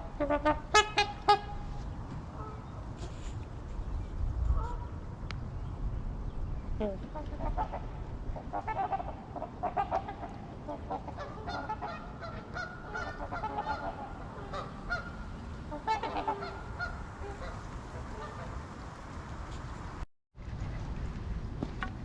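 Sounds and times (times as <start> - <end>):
waterfowl honking: 0.0 - 1.8, 7.2 - 18.6.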